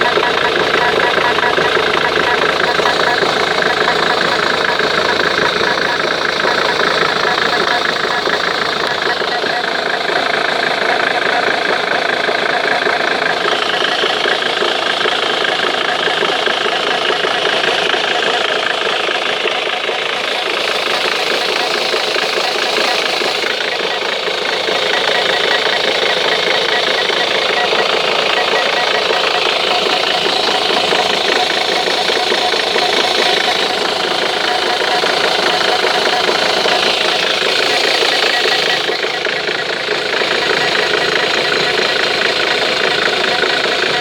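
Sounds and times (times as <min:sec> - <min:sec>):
car engine running: 0:00.0 - 0:44.0
fast ticking noise: 0:00.0 - 0:44.0.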